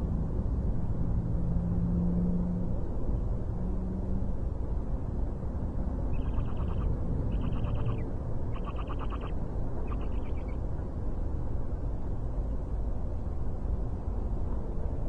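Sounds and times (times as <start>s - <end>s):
owlets calling: 6.1s - 10.6s.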